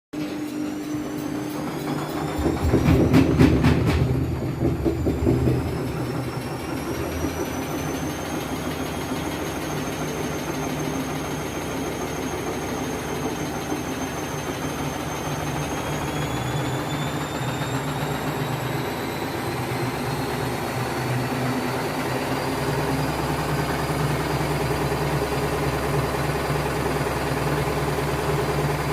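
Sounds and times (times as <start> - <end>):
washing machine spinning with whine: 0.2 - 28.9
washing machine knocking: 0.8 - 19.0.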